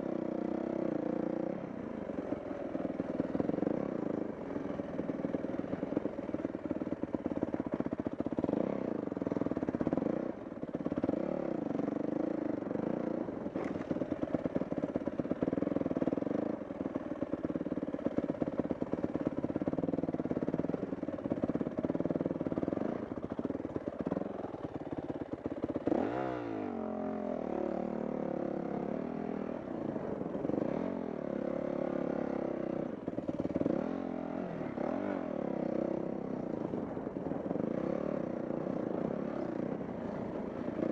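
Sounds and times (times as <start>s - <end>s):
dirt bike engine revving: 25.8s - 27.0s.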